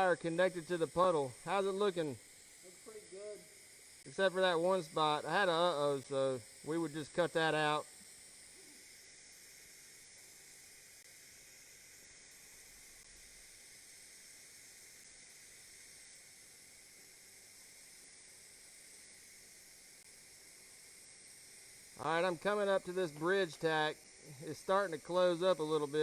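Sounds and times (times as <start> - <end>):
welding arc hissing: 0.0 - 26.0.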